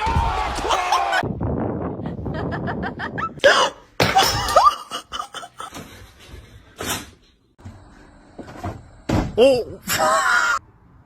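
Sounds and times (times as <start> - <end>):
person laughing: 2.0 - 5.8.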